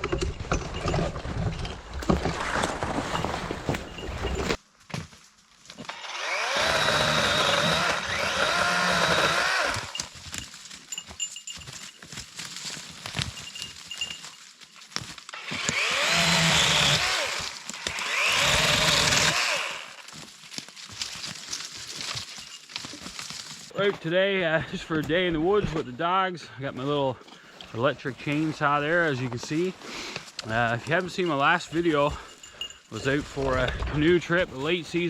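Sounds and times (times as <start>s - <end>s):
electric chainsaw cutting wood: 5.8s - 10.1s, 15.3s - 20.1s.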